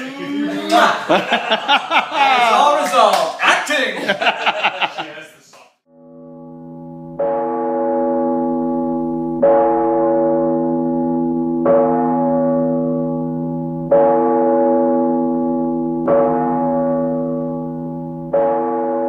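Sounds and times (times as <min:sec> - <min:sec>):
deep bell ringing: 0:05.9 - 0:19.0.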